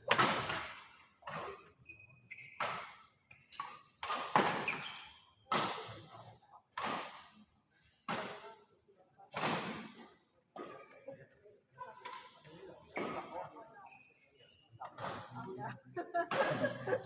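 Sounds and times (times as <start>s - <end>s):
rackets hitting shuttlecock: 0.1s - 1.7s, 2.5s - 4.8s.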